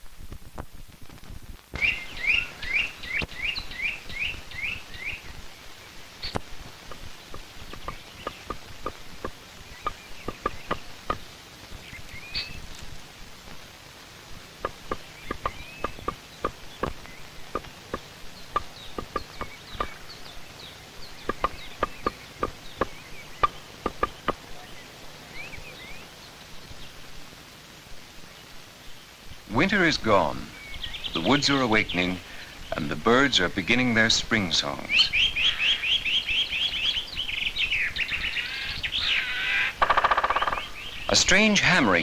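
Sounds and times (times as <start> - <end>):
small birds chirping: 0.2 - 42.0
woodpecker hammering on wood: 6.3 - 12.6, 14.3 - 24.7, 39.0 - 40.7.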